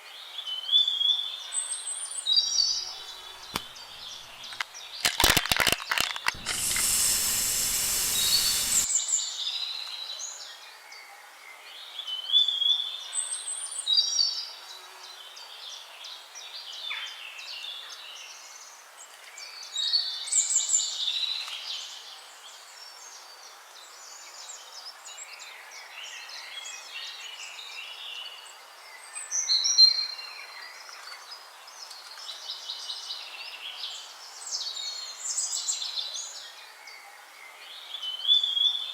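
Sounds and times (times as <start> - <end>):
loud noise hiss: 6.3 - 9.0.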